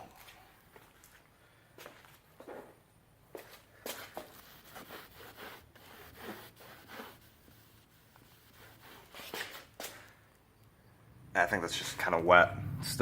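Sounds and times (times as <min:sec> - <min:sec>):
sandpaper rubbing on plastic: 0:04.2 - 0:09.8.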